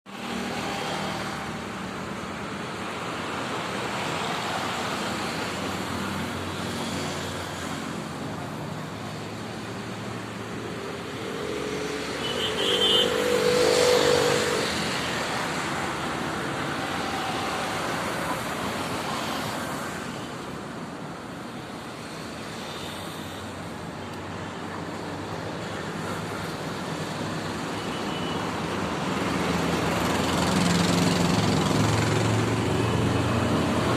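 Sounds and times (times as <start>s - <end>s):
road traffic noise: 0.1s - 33.9s
vehicle passing close by: 10.7s - 19.6s.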